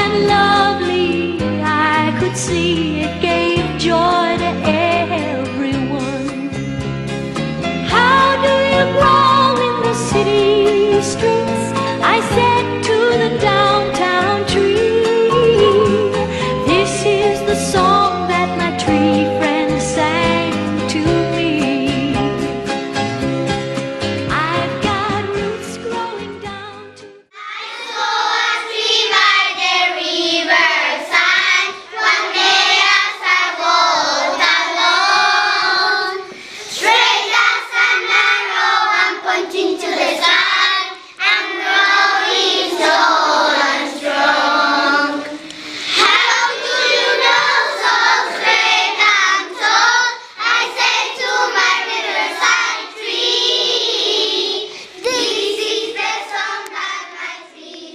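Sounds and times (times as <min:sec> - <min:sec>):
children's choir singing: 0:27.4 - 0:57.9.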